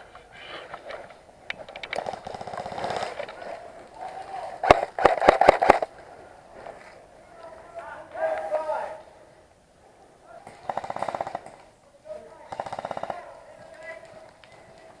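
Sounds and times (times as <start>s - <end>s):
distant voices: 0.0s - 15.0s
airsoft gun shots: 4.6s - 5.9s.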